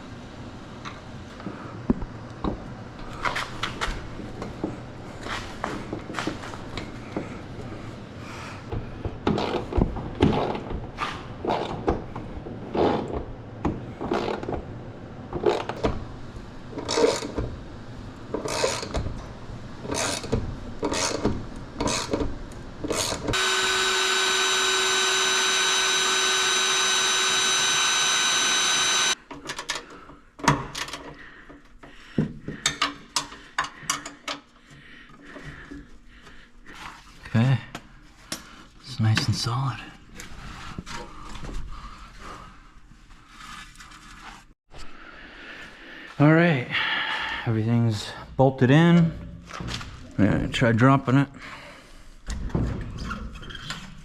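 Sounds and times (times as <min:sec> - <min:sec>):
power drill whining: 0:23.3 - 0:29.2.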